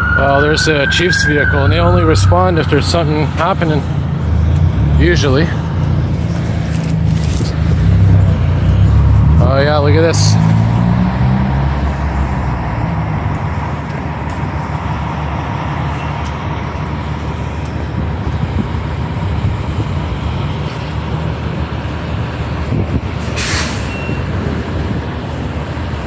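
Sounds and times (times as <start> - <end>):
diesel engines rumbling: 0.0 - 26.0
air-brake hiss: 23.2 - 24.2.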